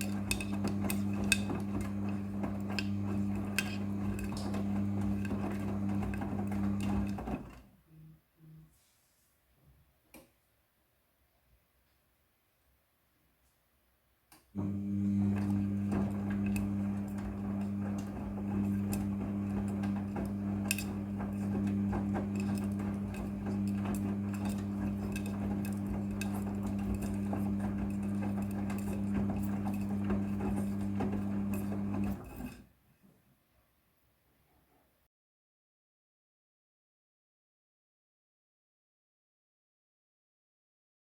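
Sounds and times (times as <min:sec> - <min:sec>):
washing machine running: 0:00.0 - 0:07.6, 0:14.6 - 0:32.6.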